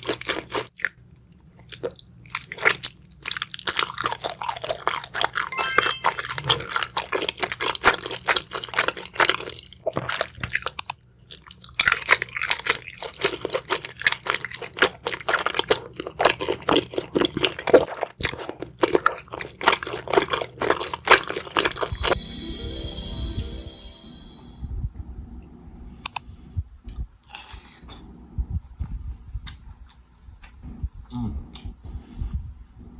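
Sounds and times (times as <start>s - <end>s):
chewing and crunching: 0.0s - 5.5s, 6.4s - 22.2s.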